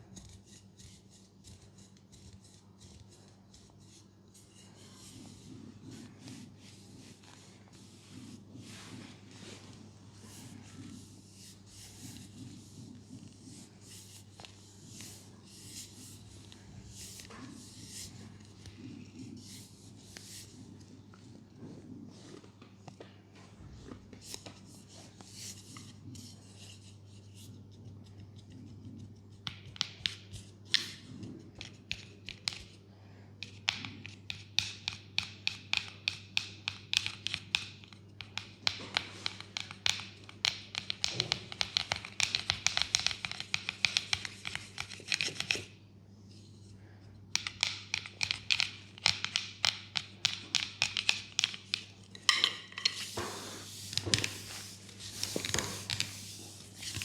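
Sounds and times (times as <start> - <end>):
hands tapping and rubbing skin: 29.4 - 32.8, 33.4 - 45.7, 47.4 - 57.0.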